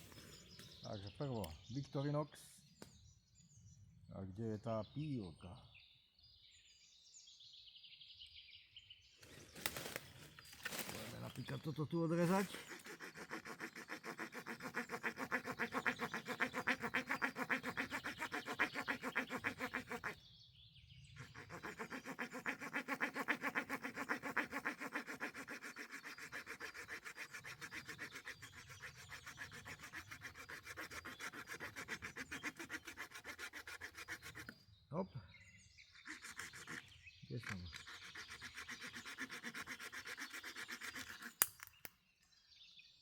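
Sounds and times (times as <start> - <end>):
small saw sawing through branch: 0.0 - 0.8, 9.2 - 20.2, 21.2 - 34.7, 35.9 - 41.9.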